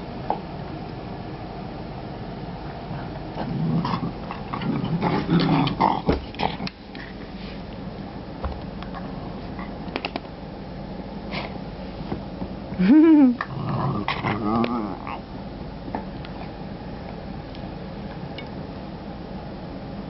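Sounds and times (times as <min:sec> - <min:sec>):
dog growling: 0:03.0 - 0:06.7, 0:13.4 - 0:15.2.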